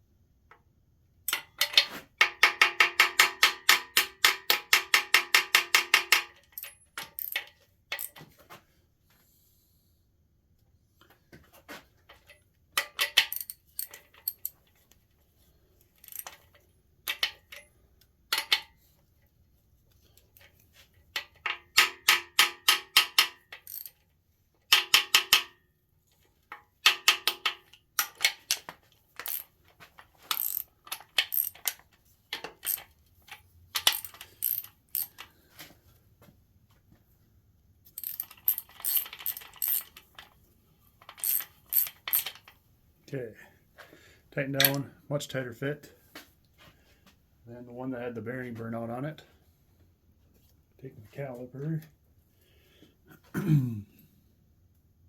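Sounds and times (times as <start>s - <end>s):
ratchet wrench clicking: 1.3s - 8.2s, 12.8s - 14.5s, 16.0s - 17.7s, 21.4s - 24.0s, 29.2s - 29.5s, 30.3s - 31.8s, 32.4s - 32.9s, 33.8s - 35.3s, 38.0s - 40.3s, 41.0s - 42.5s.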